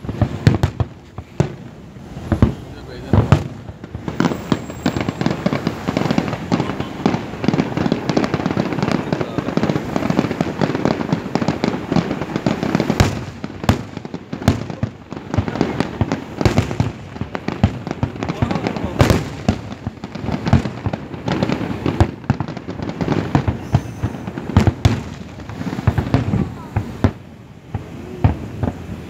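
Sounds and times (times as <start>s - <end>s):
firework bangs: 0.0s - 29.0s
fireworks crackling: 0.0s - 29.0s.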